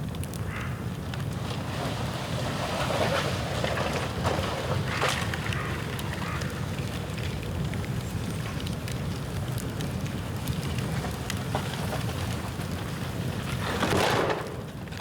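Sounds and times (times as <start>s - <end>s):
bonfire rushing: 0.0s - 15.0s
fire crackling and popping: 0.0s - 15.0s.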